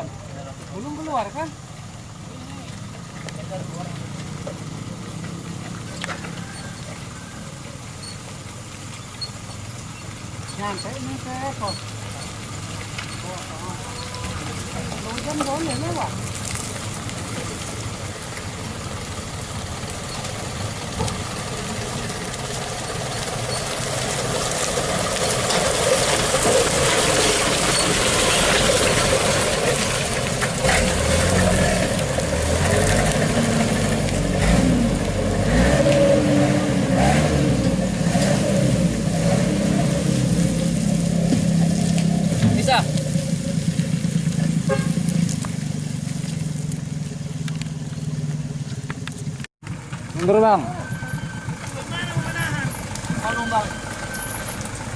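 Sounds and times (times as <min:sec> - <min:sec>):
truck engine revving: 0:03.0 - 0:54.9.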